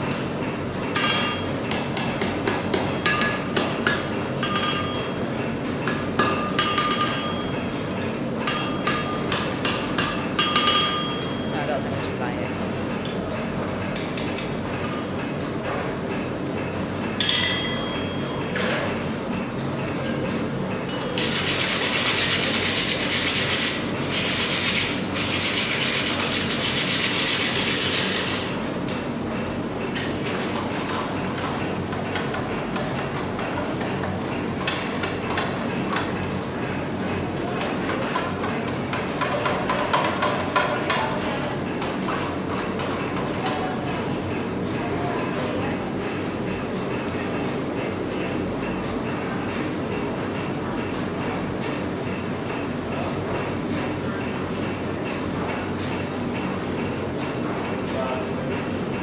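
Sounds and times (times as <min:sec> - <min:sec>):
hammer striking iron on anvil: 0:01.0 - 0:05.1, 0:05.9 - 0:07.5, 0:08.4 - 0:11.4, 0:17.2 - 0:18.4.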